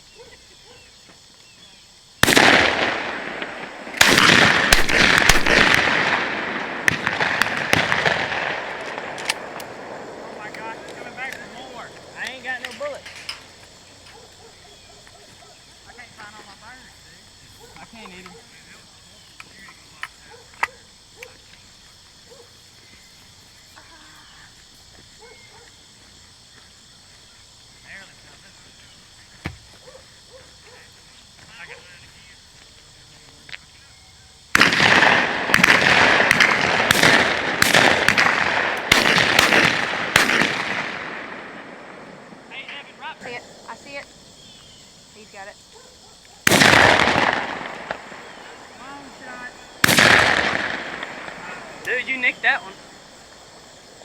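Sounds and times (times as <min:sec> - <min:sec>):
high insect chorus: 0:00.0 - 0:54.0
shotgun blasts: 0:02.2 - 0:13.4, 0:34.5 - 0:42.9, 0:46.4 - 0:52.2.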